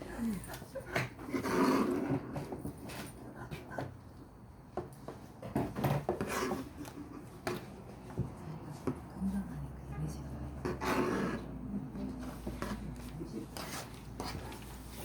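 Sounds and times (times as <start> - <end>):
paper or fabric rubbing and rustling: 12.2 - 15.0.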